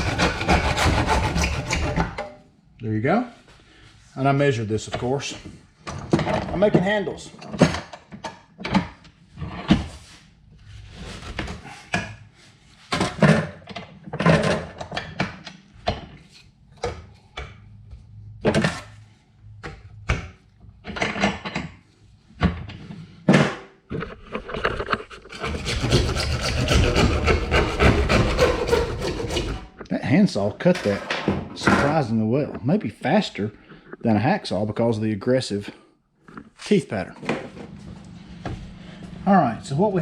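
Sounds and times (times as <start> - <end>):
handsaw cutting plastic pipe: 0.0 - 2.2, 25.1 - 29.8.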